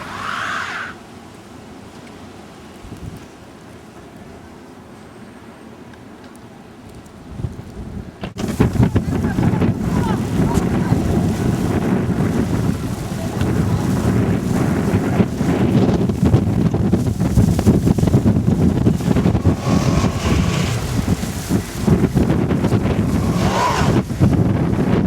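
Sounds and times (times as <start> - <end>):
wind buffeting microphone: 2.8 - 3.3, 7.0 - 25.0.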